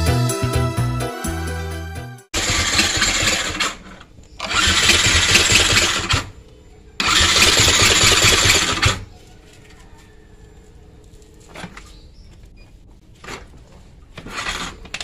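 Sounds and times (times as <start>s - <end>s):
motorcycle electric starter cranking: 2.4s - 6.4s, 7.0s - 9.1s, 14.2s - 15.0s.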